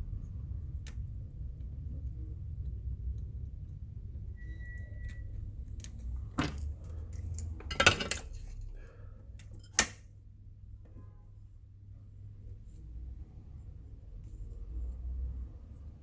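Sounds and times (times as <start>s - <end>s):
low steady hum: 0.0s - 16.0s
metallic clinks and knocks: 6.4s - 8.6s.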